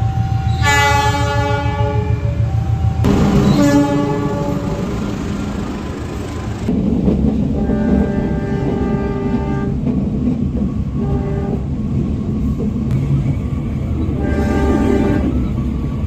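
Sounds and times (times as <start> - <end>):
train rumble: 0.0 - 16.0
locomotive air horn blasts: 0.5 - 2.4, 3.0 - 5.3, 7.6 - 9.8, 11.0 - 11.7, 14.2 - 15.4.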